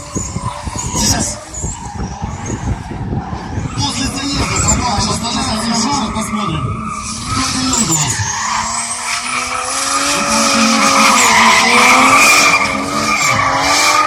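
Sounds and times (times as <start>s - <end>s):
tyres squealing: 3.6s - 14.0s
car engine revving high: 3.9s - 14.0s.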